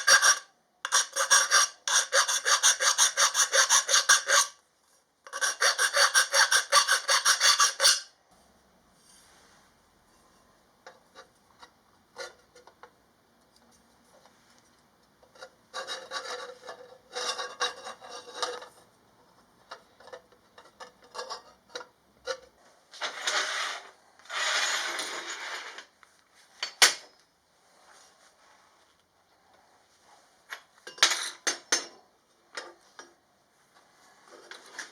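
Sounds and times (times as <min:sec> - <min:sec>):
file rasping on metal: 0:00.0 - 0:04.6, 0:05.3 - 0:08.1.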